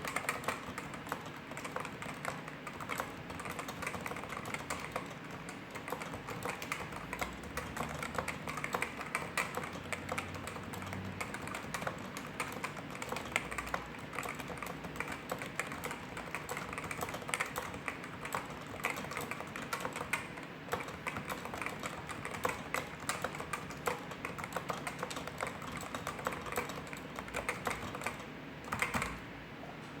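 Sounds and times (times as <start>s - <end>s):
fast typing on keyboard: 0.0s - 29.2s.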